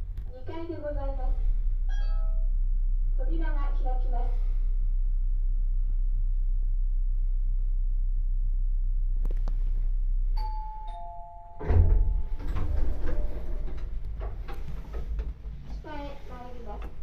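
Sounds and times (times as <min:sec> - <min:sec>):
steady low hum: 0:00.0 - 0:17.0
elevator two-note chime: 0:01.9 - 0:02.5, 0:10.4 - 0:12.9
loud thump and rumbling: 0:11.6 - 0:17.0.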